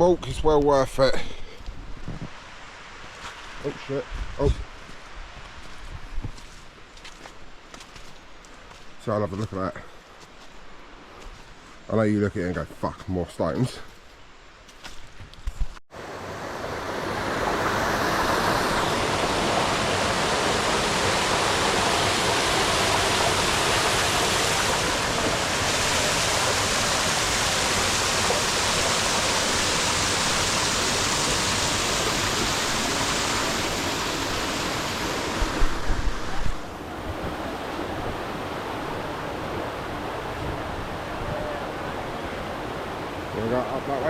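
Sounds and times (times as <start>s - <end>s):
waterfall roaring: 16.0s - 44.0s.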